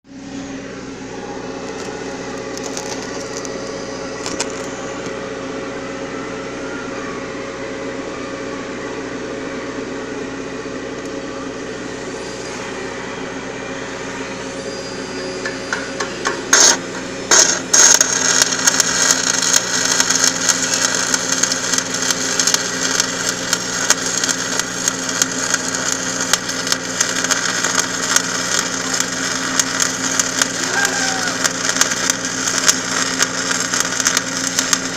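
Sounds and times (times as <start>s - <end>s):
welding machine humming: 0.0s - 34.9s
welding arc crackling: 0.8s - 5.2s, 15.2s - 34.9s
welding arc striking pops: 4.2s - 5.1s, 15.4s - 34.9s.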